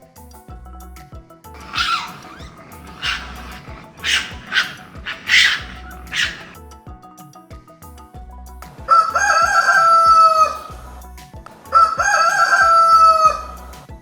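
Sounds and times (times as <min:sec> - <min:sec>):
background music with beat: 0:00.0 - 0:14.0
rooster crowing: 0:01.6 - 0:06.6, 0:08.9 - 0:10.7, 0:11.8 - 0:13.5.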